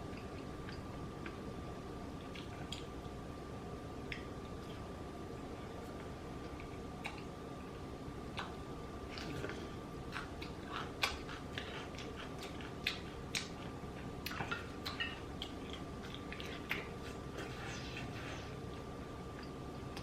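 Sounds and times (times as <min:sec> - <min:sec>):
close chewing and mouth smacks: 0:00.0 - 0:01.4, 0:02.2 - 0:03.2, 0:05.8 - 0:17.8.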